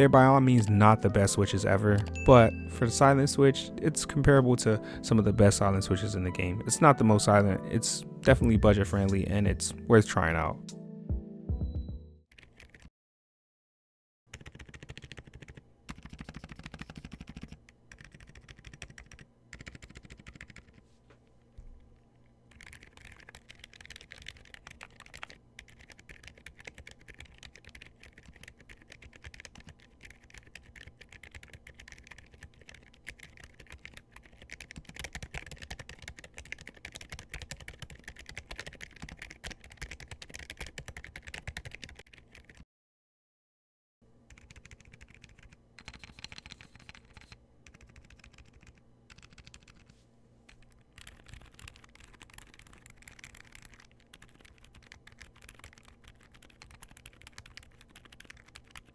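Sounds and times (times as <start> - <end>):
fast typing on mechanical keyboard: 12.3 - 12.9, 14.3 - 20.8, 22.5 - 42.6, 44.3 - 49.9, 50.5 - 58.9.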